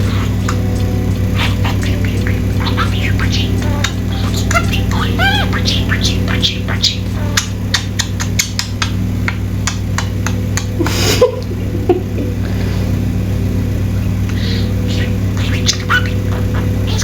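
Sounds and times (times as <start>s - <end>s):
budgerigar chattering: 0.0s - 10.8s, 14.2s - 17.0s
steady electrical hum: 0.0s - 17.0s.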